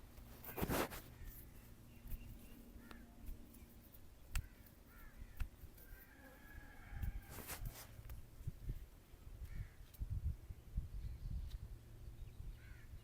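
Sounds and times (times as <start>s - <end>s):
birds chirping: 0.0s - 7.1s, 8.6s - 13.0s
bird cawing: 2.8s - 3.2s, 4.3s - 7.3s, 12.5s - 13.0s.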